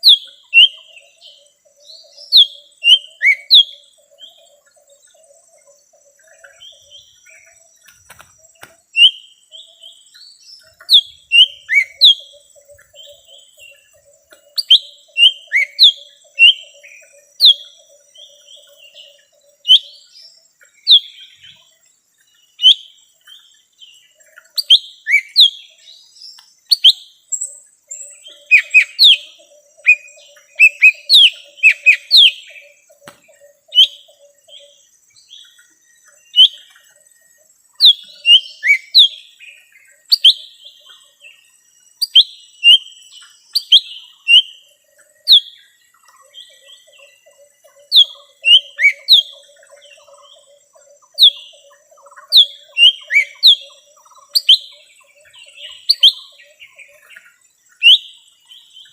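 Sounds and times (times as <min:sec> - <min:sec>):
bird whistling sharp notes: 0:10.8 - 0:12.3, 0:14.6 - 0:16.6, 0:36.3 - 0:36.7.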